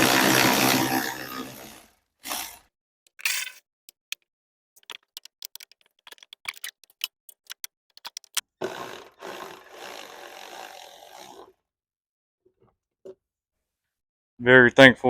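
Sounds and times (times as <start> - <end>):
impact wrench running: 0.0 - 1.8, 7.6 - 11.5
metal tools clicking: 3.1 - 4.2, 4.8 - 8.4.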